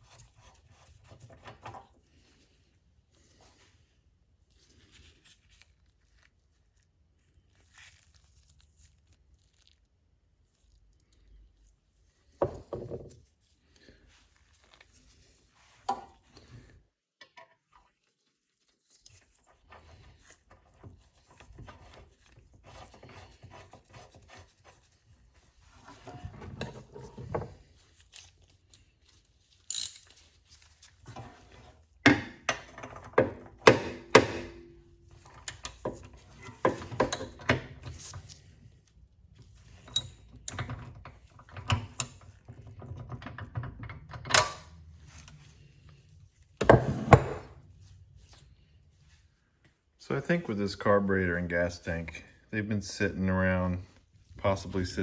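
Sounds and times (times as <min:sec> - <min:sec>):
rubbing and fiddling: 0:00.0 - 0:16.8, 0:17.5 - 0:43.8
tools and metal parts clattering: 0:29.6 - 0:30.3.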